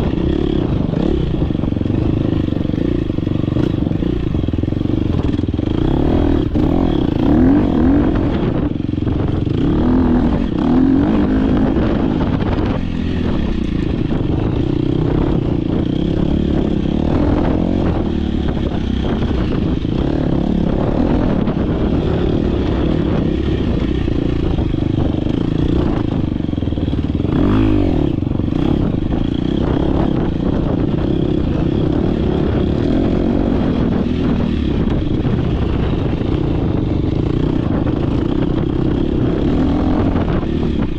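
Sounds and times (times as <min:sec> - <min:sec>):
dirt bike engine revving: 0:00.0 - 0:40.9.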